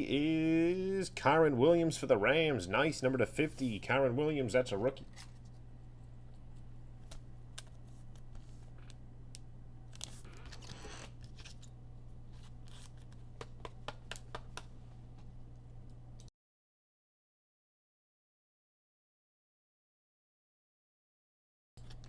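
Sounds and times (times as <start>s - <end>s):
low electrical hum: 0.0s - 16.3s, 21.8s - 22.0s
cards clicking: 12.4s - 15.3s.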